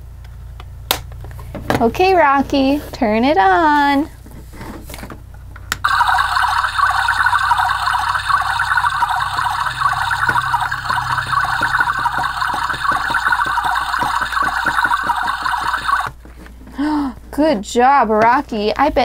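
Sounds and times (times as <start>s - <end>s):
electronic bubbling sound effect: 5.8s - 16.2s.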